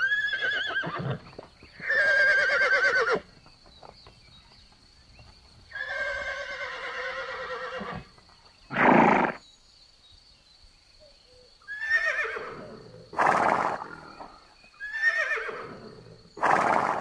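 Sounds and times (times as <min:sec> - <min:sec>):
horse whinnying: 0:00.0 - 0:03.2, 0:05.7 - 0:08.1, 0:08.7 - 0:09.4, 0:11.7 - 0:14.2, 0:14.8 - 0:17.0.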